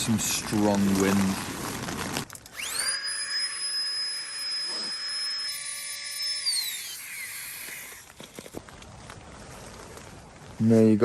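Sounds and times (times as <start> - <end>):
air pump motor whining: 2.4 - 8.6.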